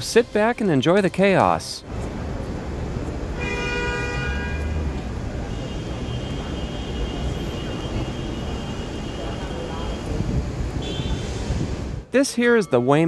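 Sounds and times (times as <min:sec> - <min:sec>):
city traffic rumble: 0:00.0 - 0:12.2
car horn honking: 0:03.3 - 0:11.7.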